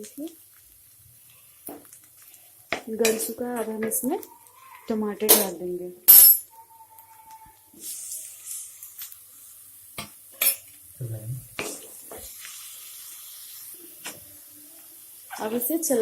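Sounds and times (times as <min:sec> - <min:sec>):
vegetables sizzling quietly: 0:00.0 - 0:06.0, 0:07.0 - 0:16.0
spoon clinking and scraping pan: 0:02.7 - 0:04.0.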